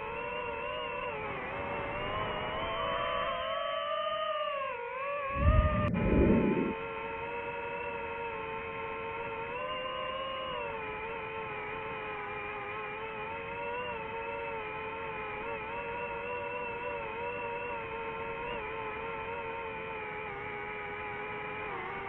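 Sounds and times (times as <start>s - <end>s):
drone propeller motors whining: 0.0s - 22.0s
low rush of air: 5.3s - 6.8s.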